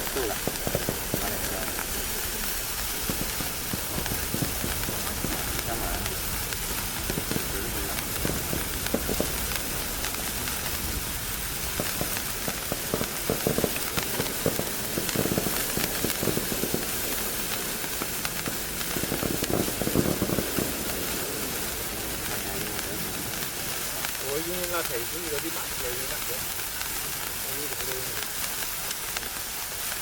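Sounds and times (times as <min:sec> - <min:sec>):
firework sparks hissing: 0:00.0 - 0:30.0
small crackles: 0:00.0 - 0:30.0.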